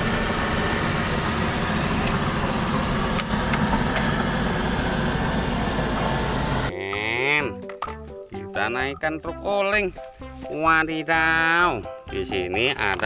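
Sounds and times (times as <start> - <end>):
heavy vehicle engine running: 0.0 - 6.7.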